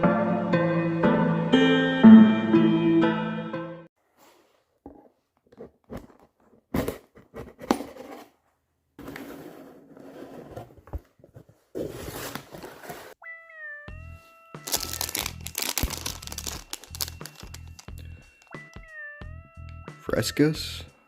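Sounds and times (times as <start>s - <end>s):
cardboard box scraping and clicking: 5.9s - 8.3s, 9.0s - 13.2s
packaging rustling: 14.6s - 18.5s
packaging tearing: 14.7s - 18.5s.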